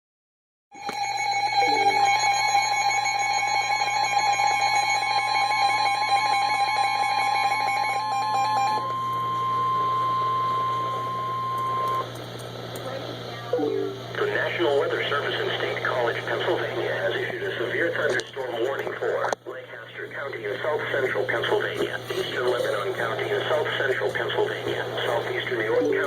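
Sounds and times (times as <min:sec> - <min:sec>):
buzzy pulsing alarm beep: 0:00.9 - 0:06.6, 0:08.4 - 0:12.0, 0:13.6 - 0:14.1
steady alert tone: 0:01.6 - 0:02.2, 0:13.6 - 0:14.1.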